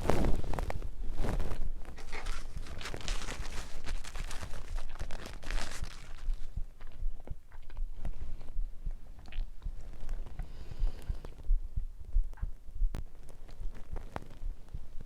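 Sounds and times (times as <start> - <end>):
low thuds: 0.0 - 15.0
chewing wet crackling clicks: 9.2 - 9.5.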